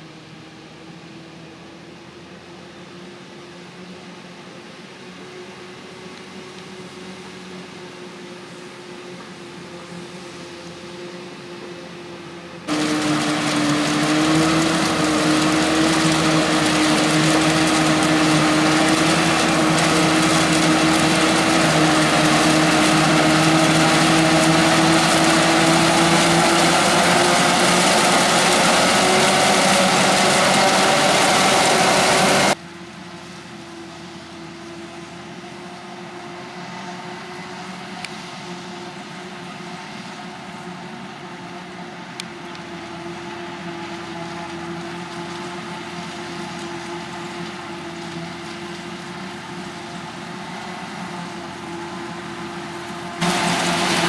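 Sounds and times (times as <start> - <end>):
diesel engine under heavy load: 12.0 - 54.0
distant machine hum: 12.7 - 32.6, 52.6 - 54.0.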